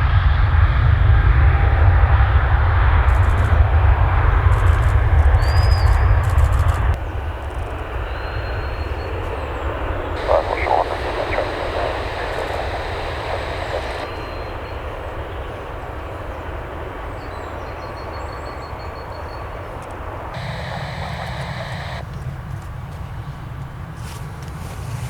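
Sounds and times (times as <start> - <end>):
jet engines roaring: 10.2 - 14.1, 20.1 - 22.4.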